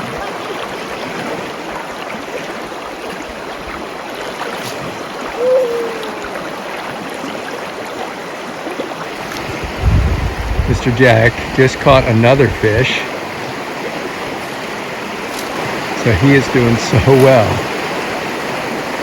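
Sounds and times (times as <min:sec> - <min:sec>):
river water rushing: 0:00.0 - 0:19.0
short downward sliding call: 0:05.4 - 0:06.4.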